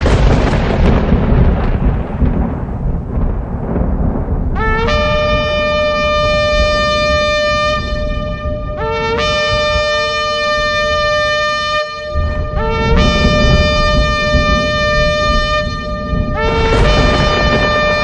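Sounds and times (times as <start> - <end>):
thunder rumbling: 0.0 - 18.0
shofar blast: 4.6 - 18.0.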